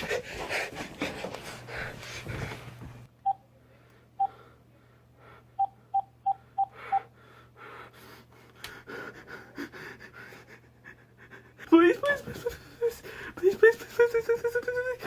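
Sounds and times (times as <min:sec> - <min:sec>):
faint breathing: 0:06.4 - 0:11.6.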